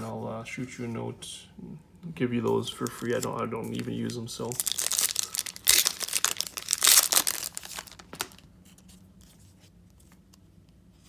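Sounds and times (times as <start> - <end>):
foil wrapper tearing and crinkling: 4.4 - 8.4.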